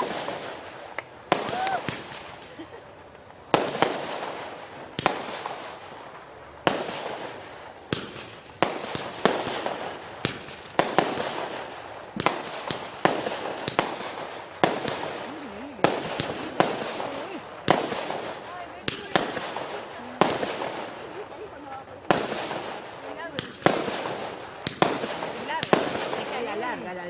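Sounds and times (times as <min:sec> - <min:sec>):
fireworks bangs: 0:00.0 - 0:27.0.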